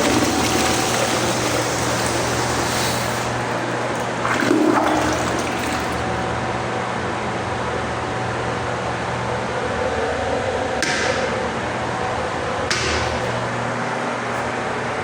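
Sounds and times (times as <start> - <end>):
toilet flush water rushing: 0.0 - 6.3.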